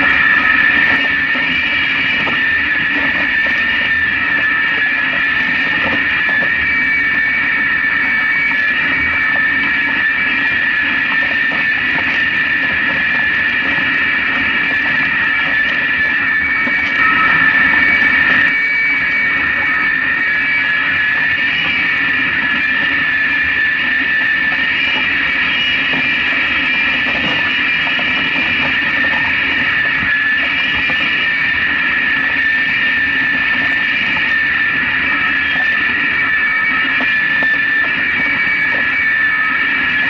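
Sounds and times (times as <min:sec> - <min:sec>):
high-pitched whine: 0:00.0 - 0:40.0.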